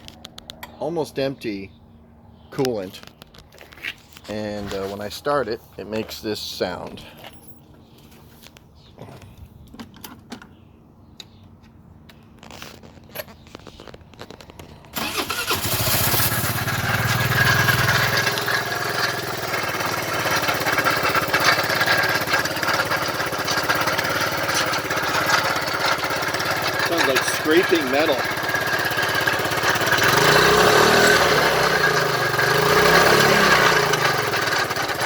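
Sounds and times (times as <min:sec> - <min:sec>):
scooter engine clanking: 0:12.4 - 0:35.0.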